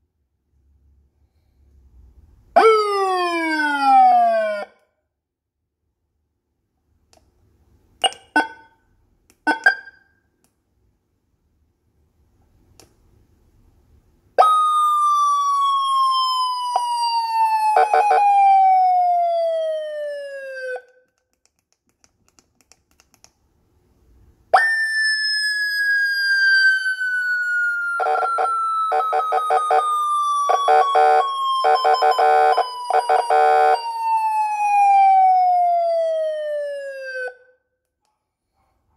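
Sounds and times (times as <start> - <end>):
electronic siren sliding down: 14.4 - 20.9, 24.6 - 37.5
rapid choppy siren pulsing: 26.0 - 35.1.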